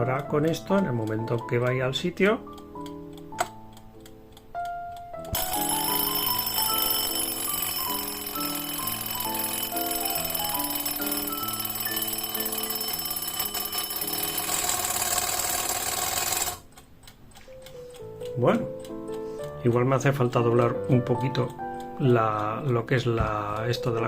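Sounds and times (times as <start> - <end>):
alarm clock bell ringing: 5.3 - 16.6.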